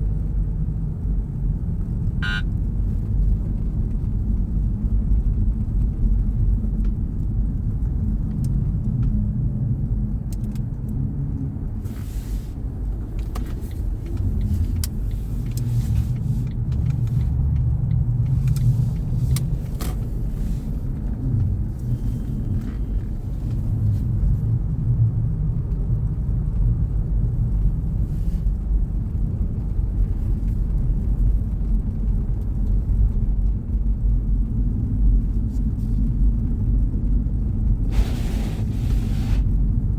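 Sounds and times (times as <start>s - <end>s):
car engine and tyre rumble: 0.0s - 39.9s
faint clicks and ticks: 13.1s - 20.0s.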